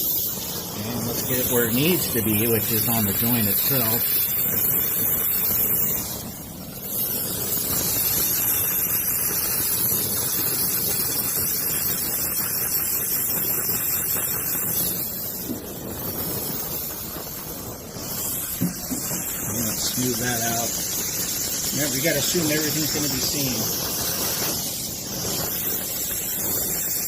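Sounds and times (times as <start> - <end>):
brazing torch hissing: 0.0 - 27.0.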